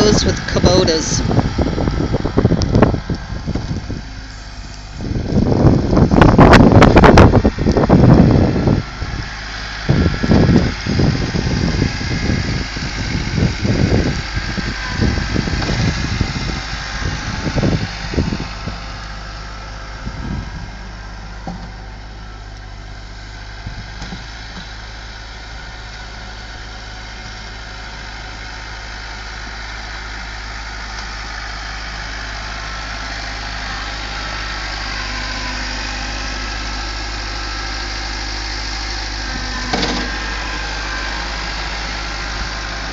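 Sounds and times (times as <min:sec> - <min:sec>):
wind rumbling on microphone: 0:00.0 - 0:19.3, 0:19.9 - 0:21.8, 0:23.5 - 0:24.7
tractor diesel engine running: 0:00.0 - 0:42.9.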